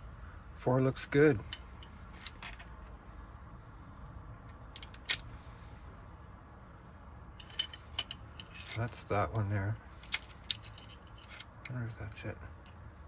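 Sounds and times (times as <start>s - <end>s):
low steady hum: 0.0s - 13.0s
metal lock parts clicking: 1.4s - 2.8s, 4.6s - 5.3s, 7.4s - 11.8s.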